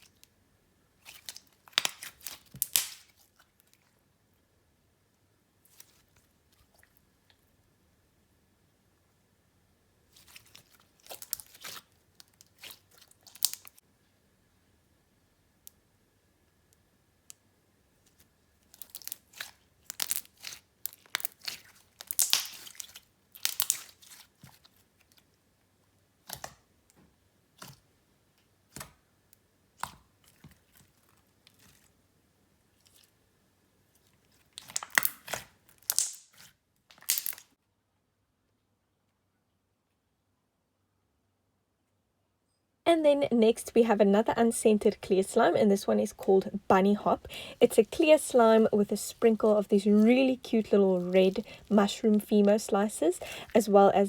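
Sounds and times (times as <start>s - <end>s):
slime squishing and popping: 1.0s - 3.4s, 10.2s - 13.8s, 18.6s - 25.2s, 26.2s - 26.6s, 34.3s - 37.5s.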